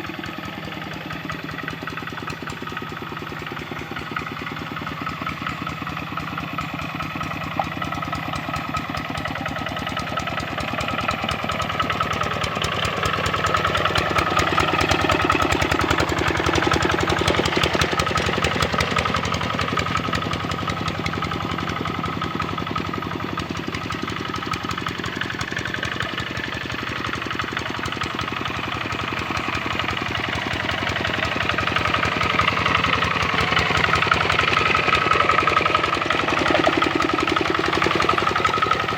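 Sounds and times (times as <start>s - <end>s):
diesel engine chugging: 0.0s - 38.9s.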